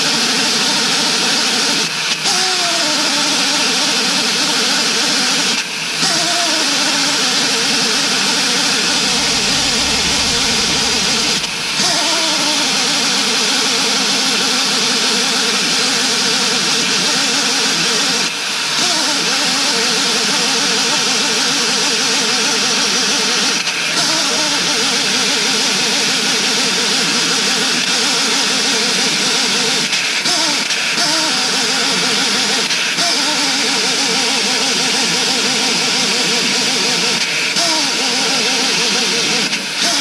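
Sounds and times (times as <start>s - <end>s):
loud hiss: 7.6s - 13.5s
diesel engine running: 8.5s - 12.8s.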